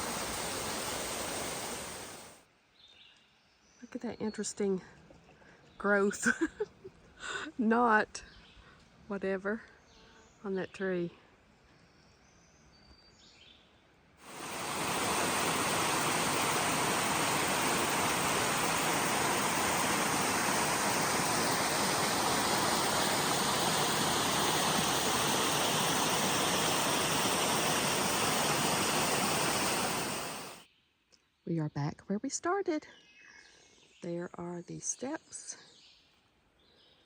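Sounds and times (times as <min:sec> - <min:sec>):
stream water rushing: 0:00.0 - 0:02.4, 0:14.2 - 0:30.6.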